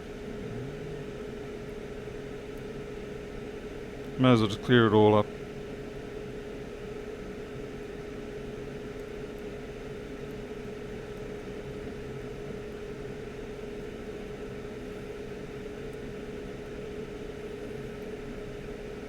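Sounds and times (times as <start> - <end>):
small electric fan whirring: 0.0 - 19.0.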